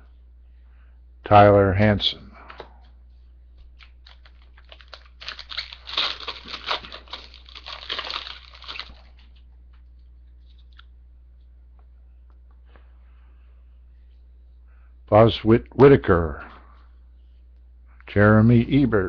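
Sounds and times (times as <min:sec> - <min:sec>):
foil wrapper tearing and crinkling: 0:03.8 - 0:09.2.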